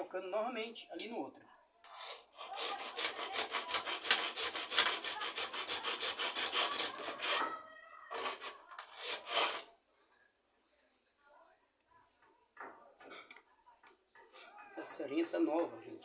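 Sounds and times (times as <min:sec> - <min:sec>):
hacksaw blade sawing metal tube: 0:01.9 - 0:07.5, 0:08.1 - 0:09.7.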